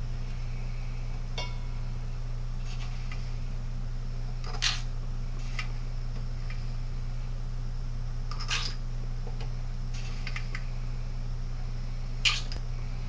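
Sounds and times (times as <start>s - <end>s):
low hum: 0.0s - 13.0s
ringing metal tink: 1.4s - 1.7s.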